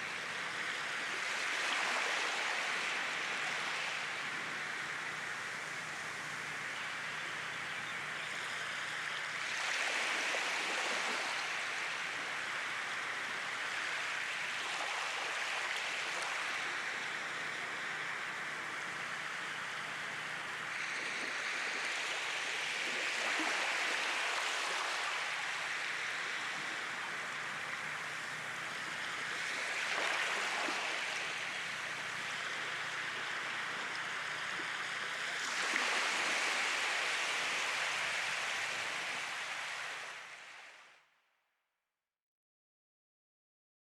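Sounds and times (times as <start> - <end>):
sea waves washing in: 9.5 - 40.6.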